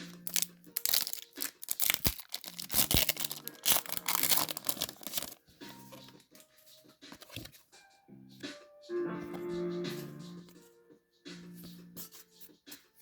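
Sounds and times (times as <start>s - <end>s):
faint background music: 0.0s - 13.0s
foil wrapper tearing and crinkling: 0.1s - 5.4s.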